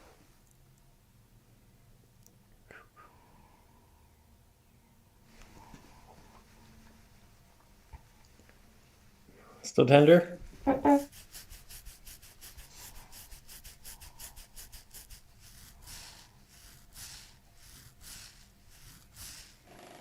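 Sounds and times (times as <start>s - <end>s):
hands rubbing on body: 10.6s - 19.6s.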